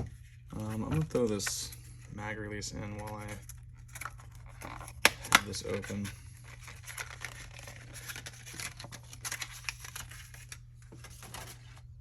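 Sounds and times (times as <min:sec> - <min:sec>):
packaging rustling: 0:02.8 - 0:12.0.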